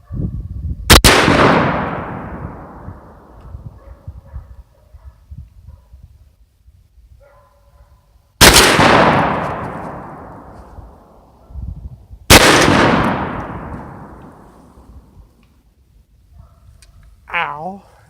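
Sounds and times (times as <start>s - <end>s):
shotgun shots: 0.9s - 3.0s, 8.4s - 10.6s, 12.3s - 14.5s
gunshot echo: 0.9s - 3.4s, 8.4s - 11.1s, 12.3s - 14.8s.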